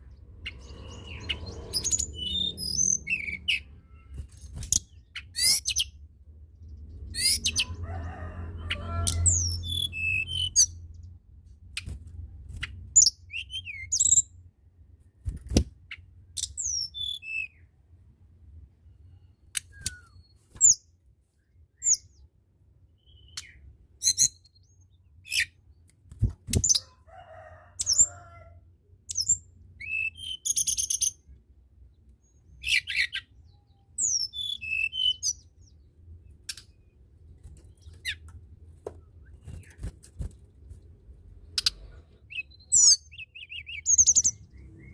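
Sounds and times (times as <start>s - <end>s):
bird chirps and whistles: 29.8s - 31.1s, 34.0s - 35.4s.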